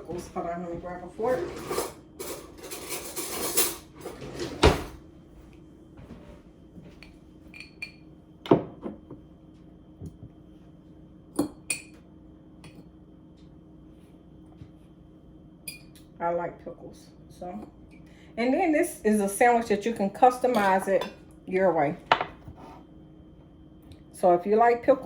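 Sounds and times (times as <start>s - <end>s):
metal cutlery rattling: 1.7s - 4.4s.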